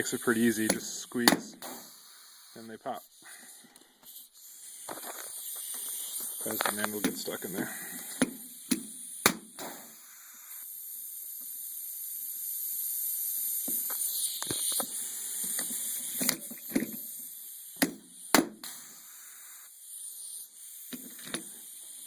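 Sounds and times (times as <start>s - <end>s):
steady hiss: 0.0s - 22.0s
rivet gun clicks and snaps: 8.2s - 9.7s.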